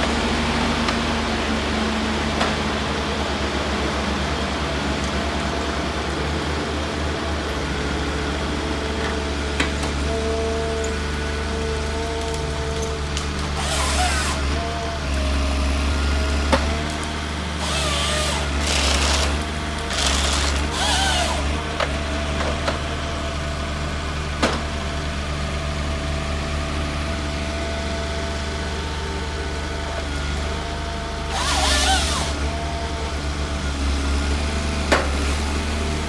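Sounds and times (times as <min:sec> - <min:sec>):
heavy machine engine running: 0:00.0 - 0:36.0
hissing and squealing bursts: 0:13.6 - 0:14.6, 0:20.7 - 0:21.6, 0:31.3 - 0:32.4.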